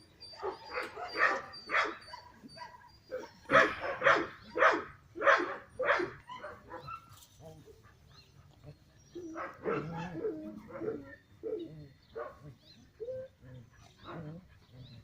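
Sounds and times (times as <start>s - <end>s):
dog barking: 0.4s - 7.1s, 9.4s - 11.1s, 12.2s - 12.4s.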